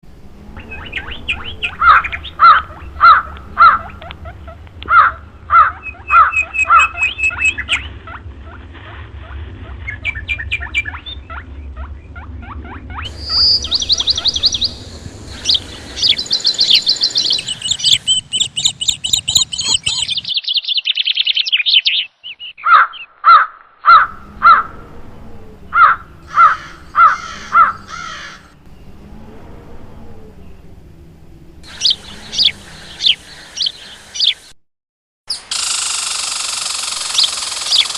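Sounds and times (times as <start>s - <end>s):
parakeet squawking: 0.7s - 7.8s, 11.3s - 20.2s, 25.7s - 28.6s, 31.7s - 34.4s
parakeet chirping: 12.9s - 20.4s, 31.6s - 34.5s, 35.3s - 37.9s.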